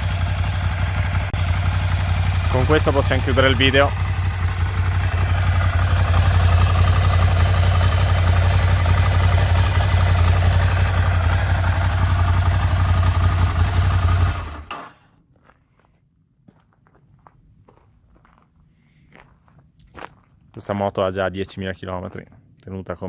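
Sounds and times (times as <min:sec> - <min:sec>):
motorcycle engine idling: 0:00.0 - 0:15.0.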